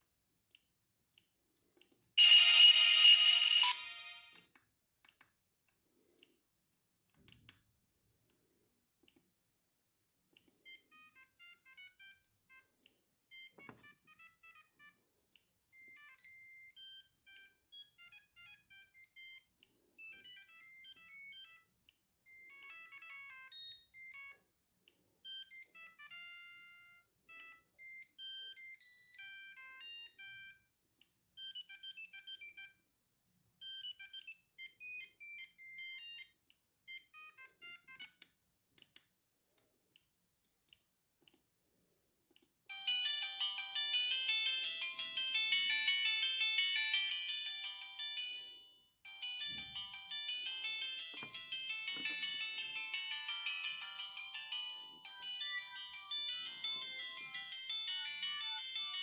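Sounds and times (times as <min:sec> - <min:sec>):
polyphonic phone ringtone: 0:02.2 - 0:04.4, 0:10.9 - 0:12.6, 0:13.3 - 0:14.9, 0:15.8 - 0:19.4, 0:20.0 - 0:21.7, 0:22.3 - 0:24.4, 0:25.3 - 0:30.6, 0:34.8 - 0:36.3, 0:36.9 - 0:38.0, 0:42.7 - 0:59.0.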